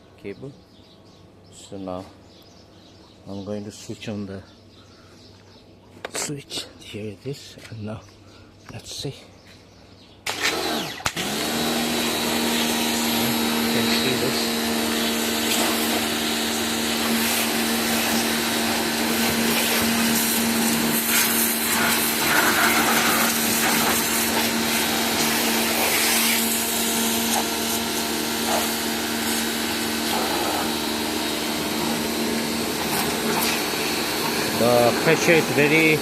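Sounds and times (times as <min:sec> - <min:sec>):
pressure washer motor hum: 0:10.3 - 0:36.0
water jet hissing: 0:12.2 - 0:36.0.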